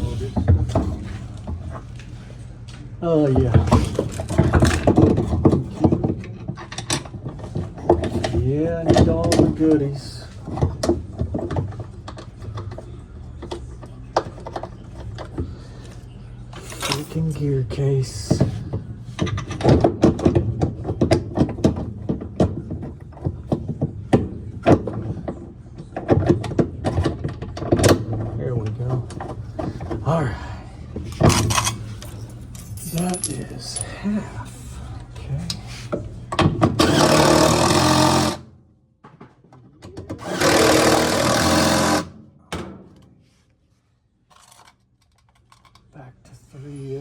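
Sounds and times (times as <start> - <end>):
tools and metal parts clicking: 16.6 - 17.3, 31.1 - 34.0, 44.3 - 45.9
power drill driving screws: 36.8 - 38.4, 40.2 - 42.1.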